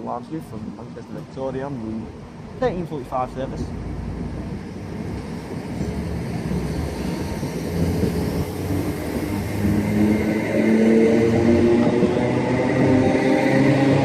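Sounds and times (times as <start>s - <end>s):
electric train running noise: 4.6s - 14.0s.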